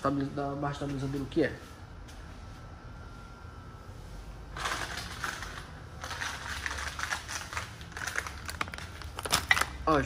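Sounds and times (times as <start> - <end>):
clicks and rustles of handling parts: 4.6 - 10.0.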